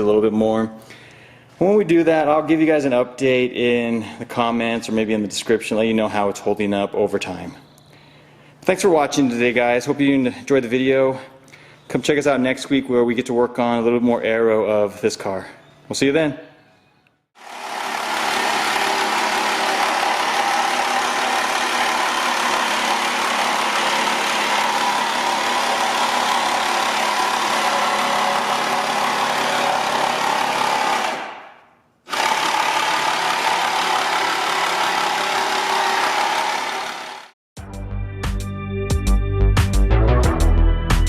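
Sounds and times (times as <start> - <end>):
car engine running: 17.5 - 30.6.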